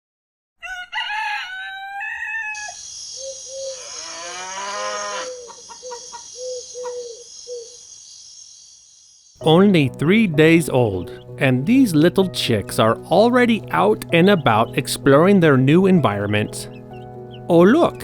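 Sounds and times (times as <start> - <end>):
rooster crowing: 0.6 - 7.0
hen clucking: 0.7 - 7.7
cow mooing: 3.8 - 5.5.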